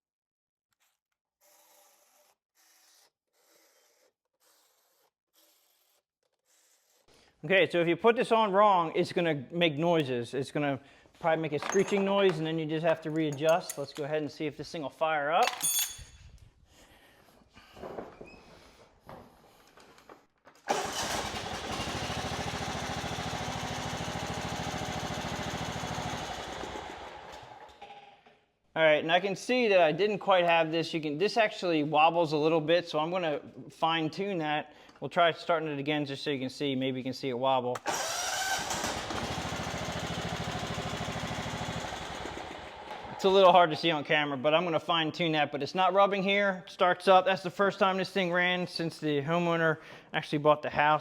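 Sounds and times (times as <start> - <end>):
tool rubbing on bolts: 15.4 - 16.2
single-cylinder engine running: 20.7 - 27.6, 37.9 - 43.2.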